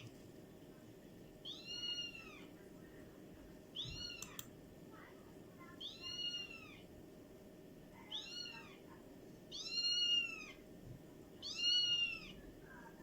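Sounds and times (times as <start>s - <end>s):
cat meowing: 1.4s - 2.5s, 8.1s - 8.8s, 9.5s - 10.6s, 11.4s - 12.4s.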